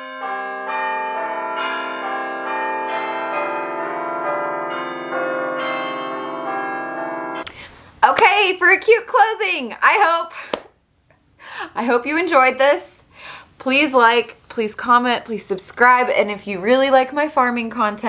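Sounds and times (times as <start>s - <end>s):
bell-like chimes ringing: 0.0s - 7.5s.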